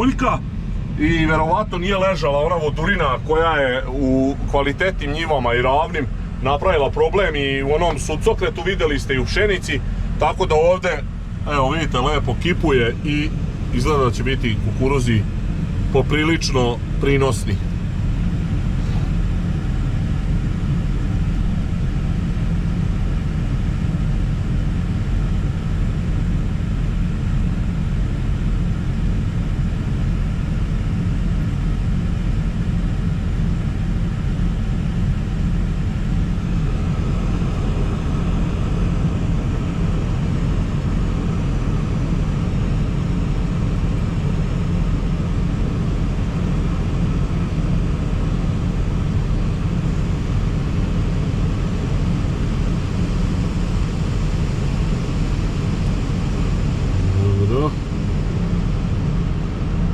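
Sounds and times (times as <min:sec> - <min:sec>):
combine engine drone: 0:00.0 - 0:59.9
higher hum: 0:11.2 - 0:20.1, 0:56.2 - 0:58.4.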